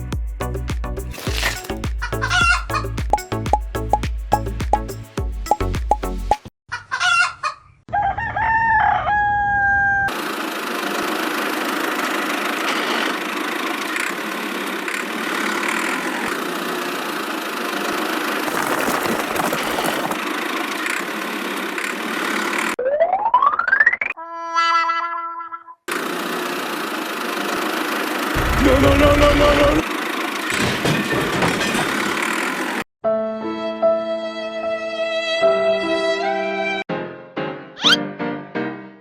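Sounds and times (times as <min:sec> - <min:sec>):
rooster crowing: 0:07.9 - 0:10.1.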